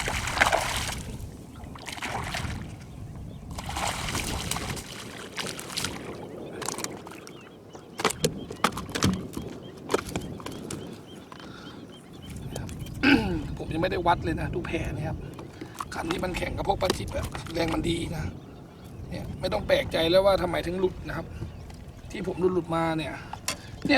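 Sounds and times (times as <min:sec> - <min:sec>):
water splashing and sloshing: 0:00.0 - 0:13.6, 0:14.6 - 0:19.0, 0:19.7 - 0:23.9
sharp knocks and clicks: 0:08.0 - 0:10.8.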